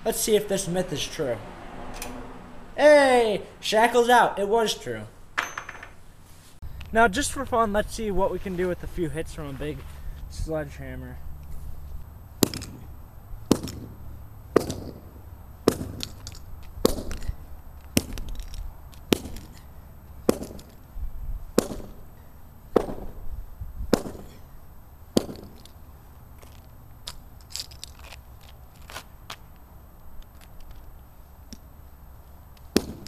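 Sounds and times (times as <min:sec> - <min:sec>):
sledgehammer striking padlock: 0:12.4 - 0:12.8, 0:14.6 - 0:15.1, 0:15.7 - 0:17.3, 0:18.0 - 0:19.6, 0:20.3 - 0:20.8, 0:21.6 - 0:22.0, 0:22.7 - 0:23.2, 0:23.9 - 0:24.4, 0:25.2 - 0:25.7, 0:32.7 - 0:33.0.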